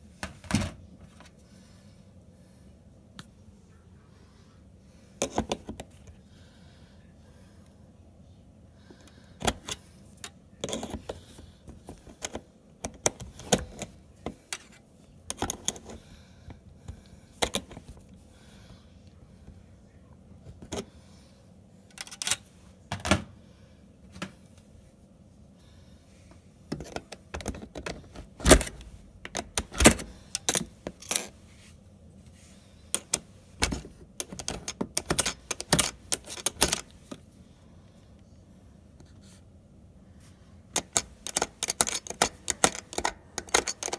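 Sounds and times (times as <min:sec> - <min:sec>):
metal tools clinking and rattling: 0:33.0 - 0:37.1, 0:40.8 - 0:43.9.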